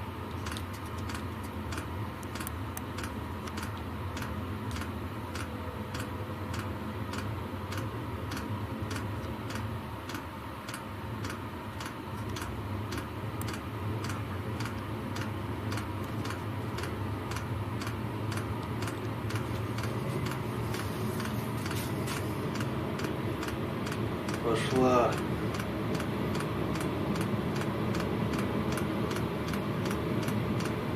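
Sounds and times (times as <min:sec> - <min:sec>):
blower fan humming: 0:00.0 - 0:30.9
fuel pump ticking: 0:00.5 - 0:20.4.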